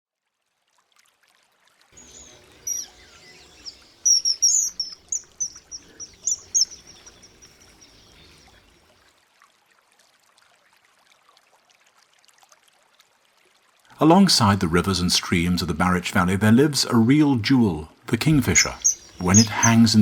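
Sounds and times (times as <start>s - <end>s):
faint running water: 0.5s - 16.4s, 18.1s - 20.0s
kingfisher shrill whistled calls: 2.0s - 8.5s, 18.3s - 20.0s.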